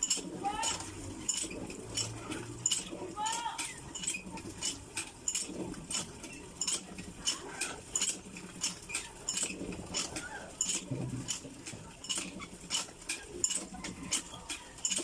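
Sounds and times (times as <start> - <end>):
small hard items clinking: 0.0 - 6.0.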